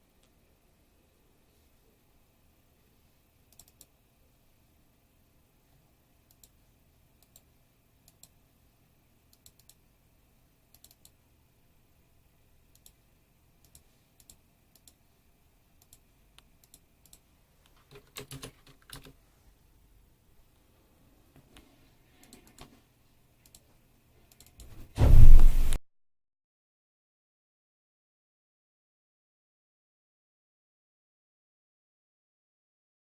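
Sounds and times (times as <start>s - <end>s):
keyboard and mouse clicking: 3.5s - 3.9s, 6.3s - 6.6s, 7.2s - 8.4s, 9.3s - 9.8s, 10.7s - 11.2s, 12.7s - 13.0s, 13.6s - 15.0s, 15.8s - 16.0s, 16.6s - 19.2s.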